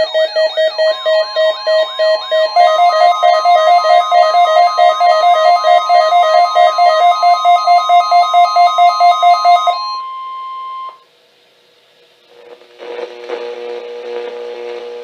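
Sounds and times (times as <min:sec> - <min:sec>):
pulsing two-pitch electronic alarm: 0:00.0 - 0:11.0
steady warning tone: 0:00.0 - 0:11.0.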